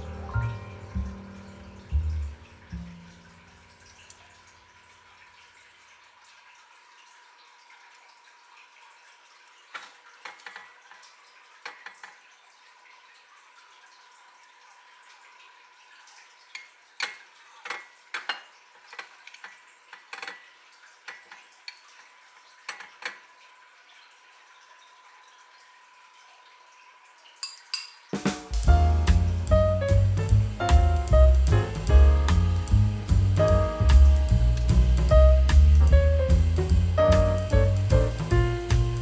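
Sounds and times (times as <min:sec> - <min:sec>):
faint hiss and hum: 0:00.0 - 0:04.4, 0:28.2 - 0:39.0.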